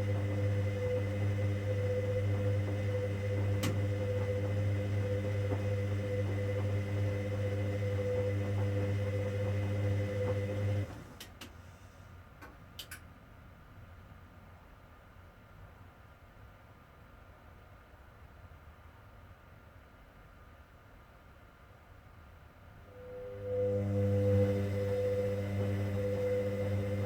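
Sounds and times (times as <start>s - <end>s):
washing machine motor hum: 0.0s - 11.4s, 22.9s - 27.0s.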